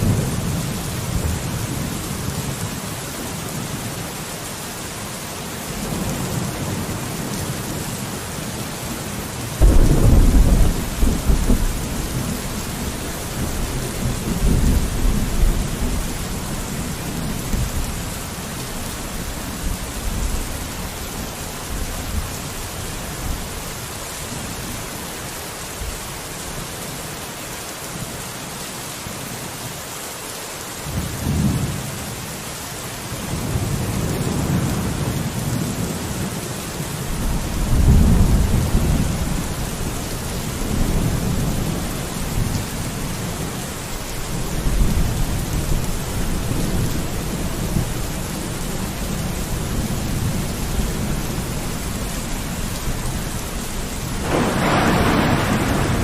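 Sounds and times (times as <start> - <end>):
rain falling on a window: 0.0 - 56.0
thunder rumbling: 9.6 - 23.5, 37.1 - 56.0.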